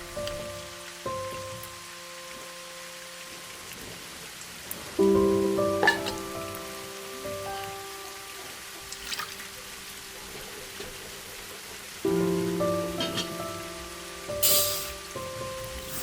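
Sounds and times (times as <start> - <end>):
food sizzling in oil: 11.2 - 16.0.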